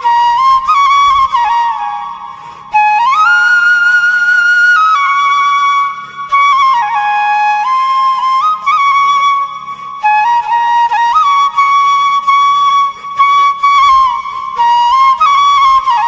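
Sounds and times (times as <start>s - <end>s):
flute playing slow melody: 0.0s - 16.0s.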